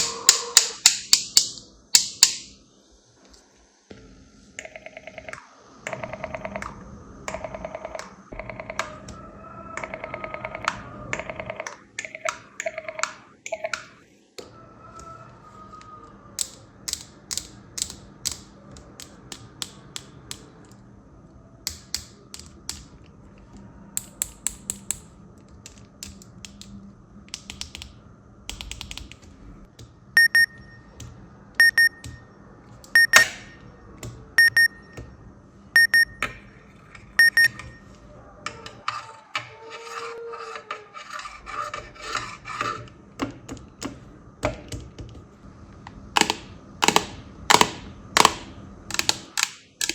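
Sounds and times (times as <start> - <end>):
plastic toy clicks: 0.0 - 2.5, 16.4 - 20.5, 25.7 - 29.3, 46.2 - 49.9.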